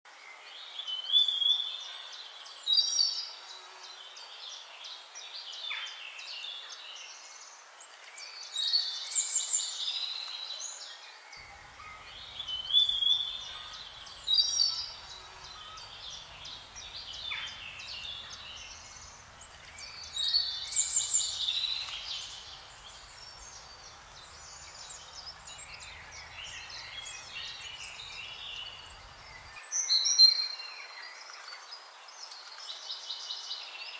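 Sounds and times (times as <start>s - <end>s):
bird singing whistled phrases: 11.4s - 29.6s
soft bird chirping: 11.4s - 29.6s.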